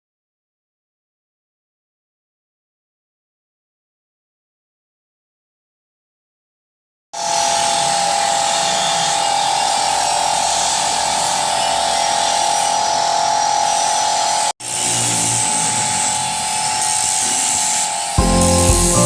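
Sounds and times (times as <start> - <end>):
grinding machine whining: 7.2 - 19.0.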